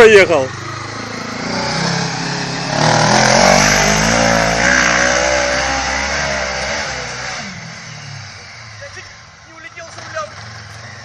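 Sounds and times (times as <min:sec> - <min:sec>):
vehicle engine revving hard: 0:00.3 - 0:08.8.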